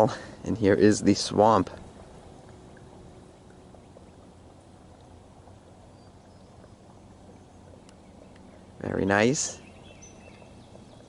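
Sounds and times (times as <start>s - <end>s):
low outdoor hiss: 0.0s - 11.0s
faint high ticks: 1.7s - 8.6s.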